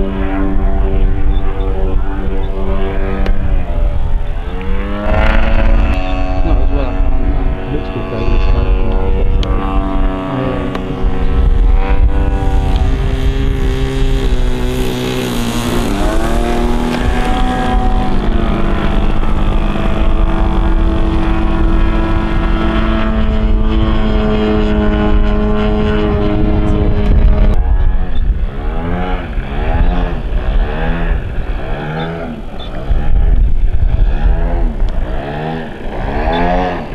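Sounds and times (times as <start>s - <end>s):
model plane engine in flight: 0.0s - 36.9s.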